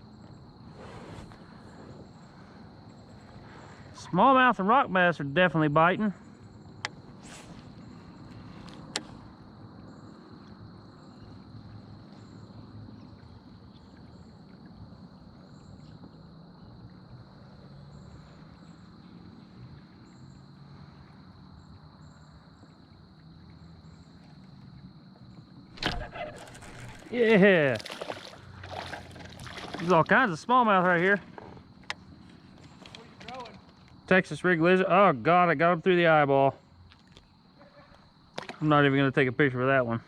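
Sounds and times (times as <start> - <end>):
low river rumble: 25.7 - 33.6
sharp click: 25.8 - 27.0.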